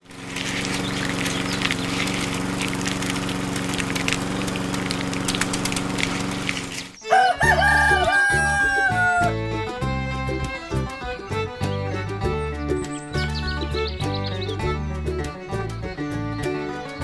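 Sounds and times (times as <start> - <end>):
steady low hum: 0.0 - 7.0
chickens clucking: 0.1 - 9.8
music with a regular beat: 7.8 - 17.0.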